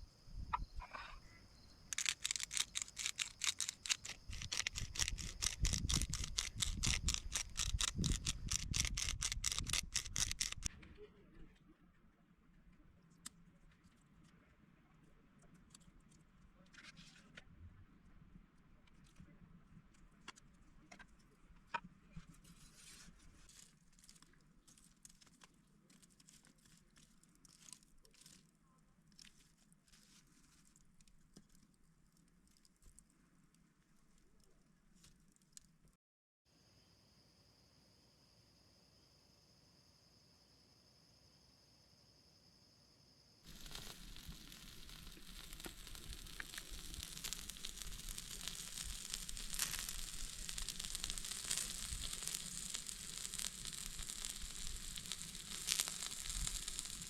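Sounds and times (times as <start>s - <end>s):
sharp clicks: 1.9s - 10.7s
rapid scraping strokes: 2.0s - 10.7s
faint rustling and crinkling: 12.7s - 36.0s, 43.5s - 57.0s.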